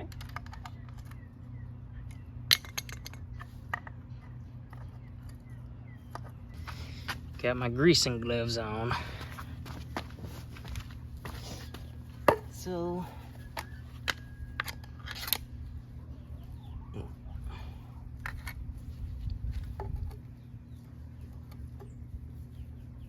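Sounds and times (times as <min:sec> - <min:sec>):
steady low hum: 0:00.0 - 0:23.0
metal parts clicking and knocking: 0:02.5 - 0:04.0.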